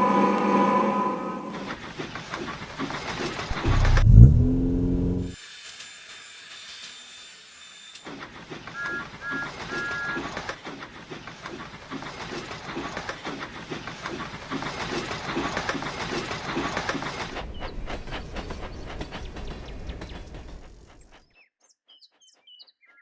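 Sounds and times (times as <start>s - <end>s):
steam locomotive whistle toots: 0.0s - 1.8s, 8.7s - 10.4s
steam locomotive chuffing: 12.6s - 21.3s.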